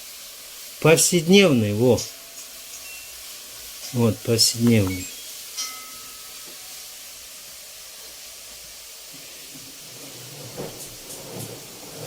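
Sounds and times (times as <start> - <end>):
faint hiss: 0.0 - 12.0
button click: 4.6 - 5.0.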